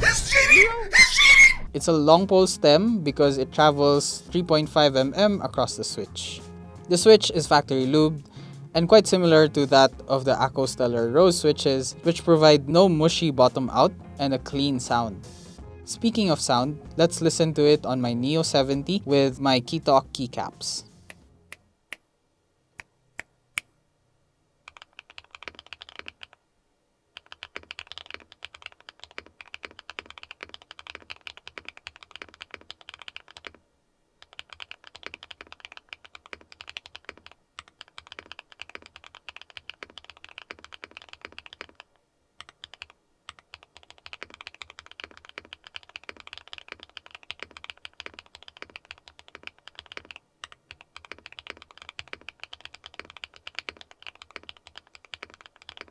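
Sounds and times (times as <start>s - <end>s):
mechanical keyboard typing: 24.7s - 26.4s, 27.2s - 33.6s, 34.2s - 55.9s.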